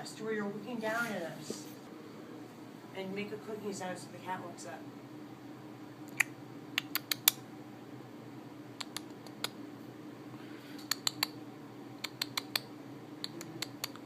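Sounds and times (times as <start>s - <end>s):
person making clicking sounds: 6.1s - 7.4s, 8.8s - 9.6s, 10.8s - 11.4s, 12.0s - 14.0s.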